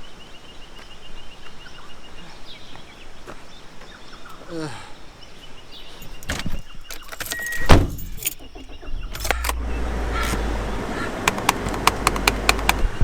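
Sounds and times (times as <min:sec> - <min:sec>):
keys clicking and rattling: 0:06.0 - 0:08.5
car door closing thud: 0:07.5 - 0:08.2
car engine starting and running: 0:07.5 - 0:13.0.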